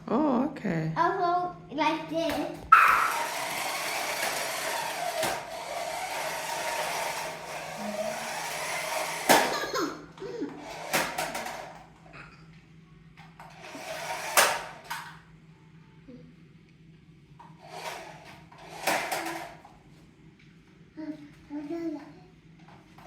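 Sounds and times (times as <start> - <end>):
toy car motor whirring: 2.7 - 9.9, 10.5 - 11.8, 13.4 - 15.1, 17.6 - 19.6.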